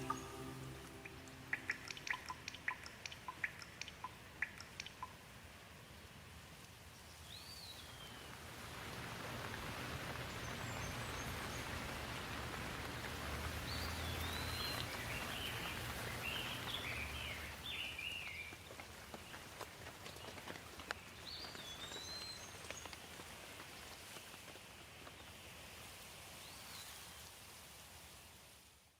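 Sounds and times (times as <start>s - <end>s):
low hum: 0.0s - 2.7s
bird chirping: 0.0s - 5.1s.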